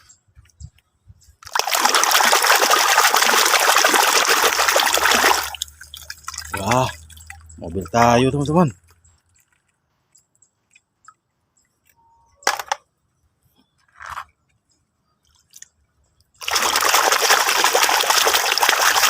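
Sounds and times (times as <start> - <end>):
water running loudly: 1.5 - 7.2, 16.4 - 19.0
faint clicks of toys handled: 8.8 - 12.9.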